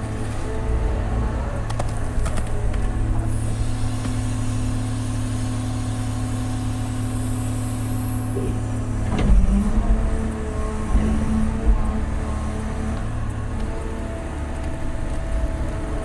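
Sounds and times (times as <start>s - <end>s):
excavator diesel engine running: 0.0s - 16.0s
machinery clunk: 8.2s - 15.9s.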